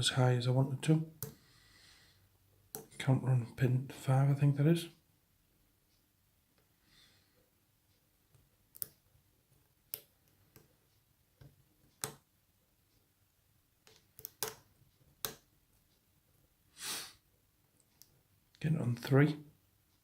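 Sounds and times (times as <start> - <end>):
lock pick metal clicks: 13.9 - 14.6.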